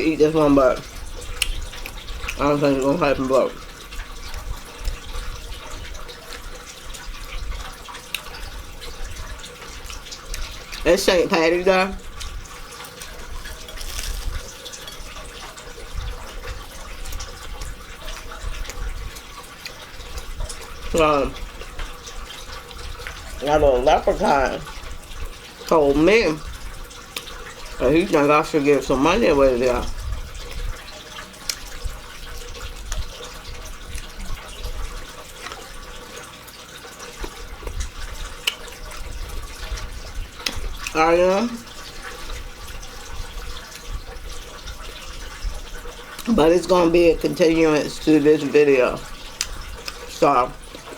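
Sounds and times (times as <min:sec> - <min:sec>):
water trickling: 0:00.0 - 0:50.9
wet chewing: 0:00.3 - 0:11.1, 0:12.0 - 0:50.9
mouth clicking sounds: 0:49.3 - 0:50.9.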